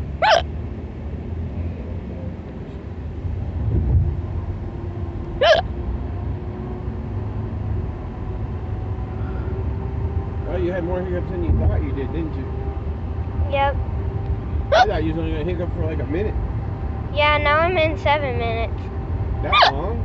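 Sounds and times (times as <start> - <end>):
moving car rumble: 0.0 - 20.0
girl hiccuping: 0.2 - 0.4, 5.4 - 5.6.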